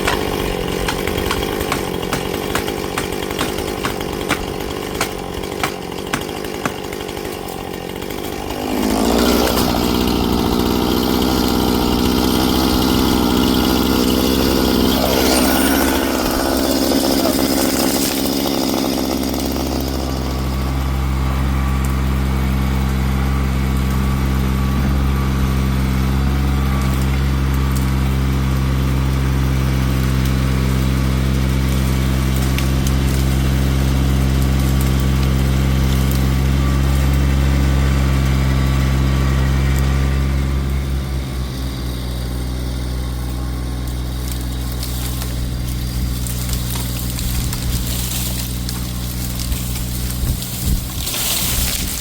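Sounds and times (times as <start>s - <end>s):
engine running steadily: 0.0s - 52.0s.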